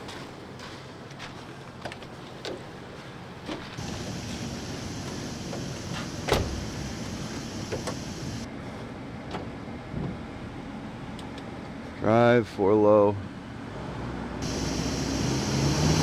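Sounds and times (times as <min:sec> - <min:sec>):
vehicle engine running: 0:00.0 - 0:08.5, 0:14.4 - 0:16.0
steady hiss: 0:02.6 - 0:08.5, 0:14.4 - 0:16.0.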